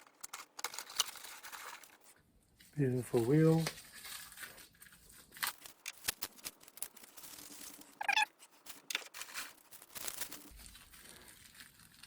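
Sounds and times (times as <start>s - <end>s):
packaging rustling and clicking: 0.0s - 2.2s, 3.5s - 12.0s
cat meow: 8.0s - 8.3s.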